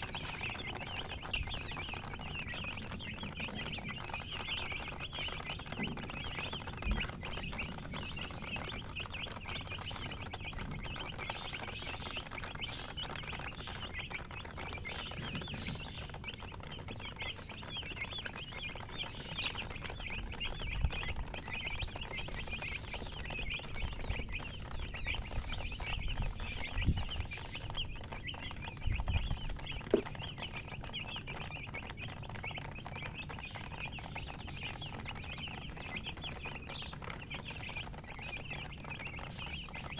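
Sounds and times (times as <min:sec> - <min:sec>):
baby chicks peeping: 0:00.0 - 0:39.9.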